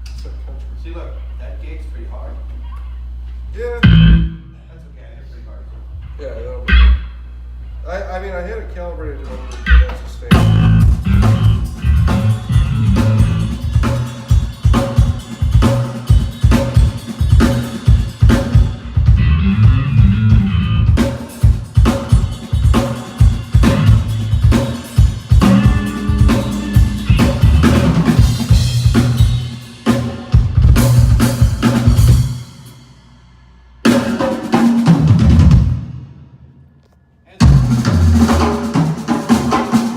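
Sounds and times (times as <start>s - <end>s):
drum kit beat with fills: 3.8s - 4.5s, 9.6s - 36.4s, 37.3s - 39.9s.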